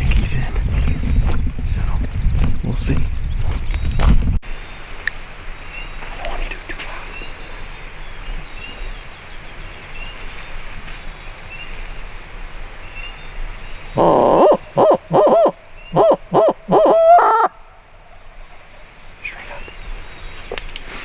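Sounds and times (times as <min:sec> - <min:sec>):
owl hoots from a call: 0:14.0 - 0:17.6.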